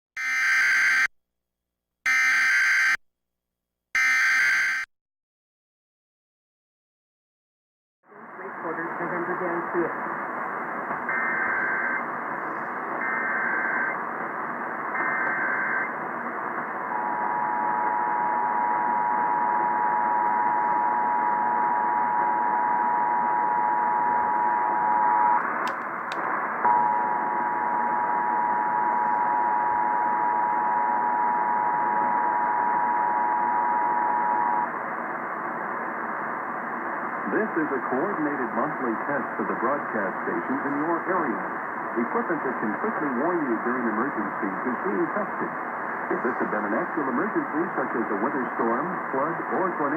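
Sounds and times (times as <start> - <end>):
clicks: 25.4 - 26.2.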